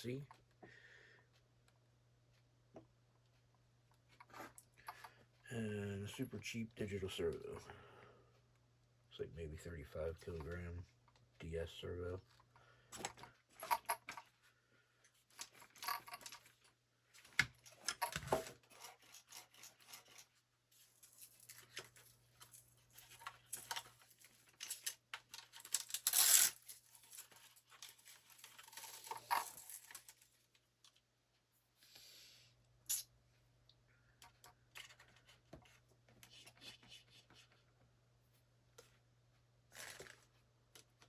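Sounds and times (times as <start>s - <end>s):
hands rustling and scraping parts: 3.9s - 5.4s, 12.2s - 31.5s, 34.2s - 37.8s, 39.7s - 41.0s.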